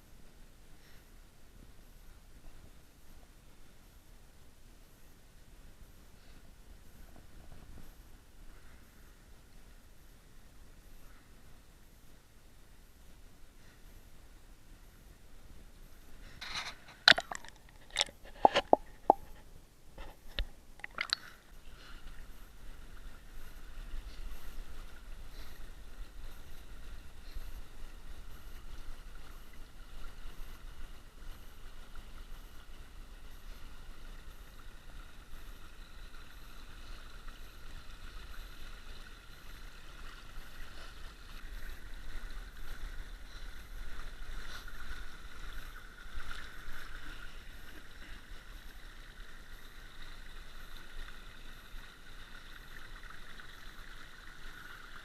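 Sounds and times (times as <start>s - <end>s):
creek water trickling over rocks: 15.5s - 55.0s.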